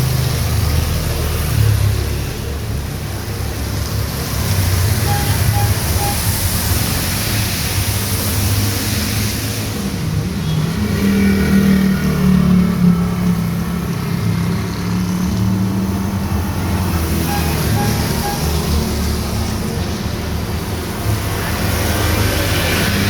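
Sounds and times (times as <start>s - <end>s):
heavy rain hissing: 0.0s - 23.0s.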